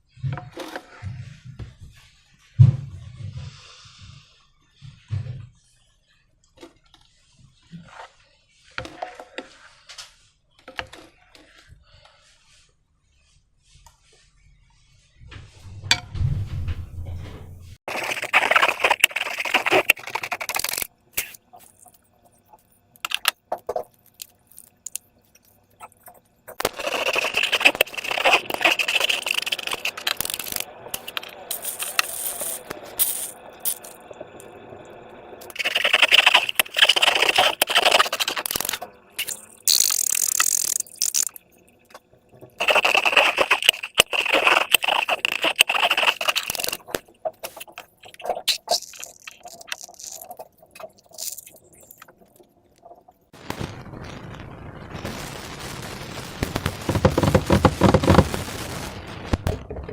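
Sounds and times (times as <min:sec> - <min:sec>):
slime crackling and squelching: 0:17.8 - 0:34.0, 0:35.4 - 0:41.5, 0:42.6 - 0:52.2, 0:56.4 - 0:59.9.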